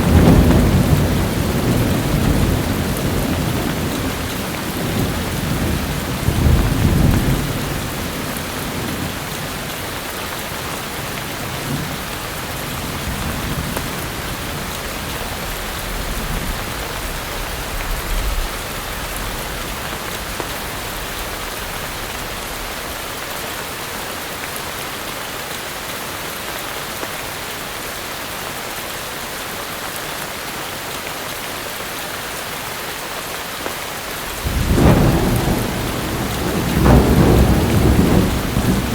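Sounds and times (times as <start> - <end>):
thunder rolling: 0.0 - 9.7, 34.2 - 38.9
heavy rain falling: 0.0 - 38.9.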